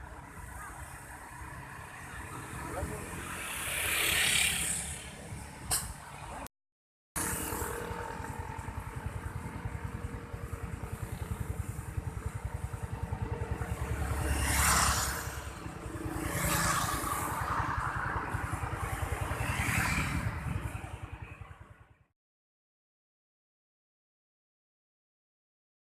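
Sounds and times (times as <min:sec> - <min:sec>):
vehicle engine running: 0:07.2 - 0:14.6.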